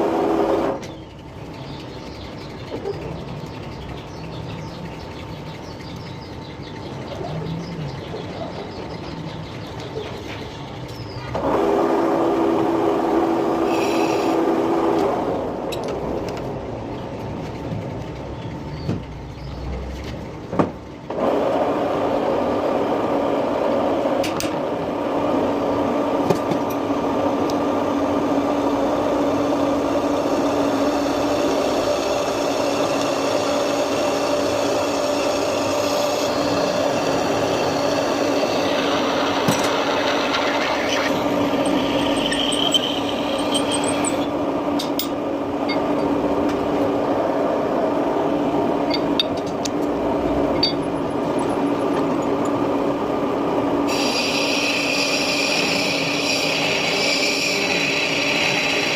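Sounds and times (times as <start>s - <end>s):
lathe humming: 26.8s - 49.1s, 49.8s - 58.9s.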